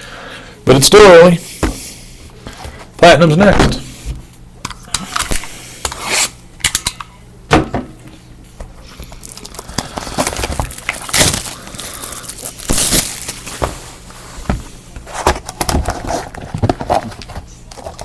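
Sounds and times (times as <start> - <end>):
wrapper tearing and crinkling: 9.1 - 13.5.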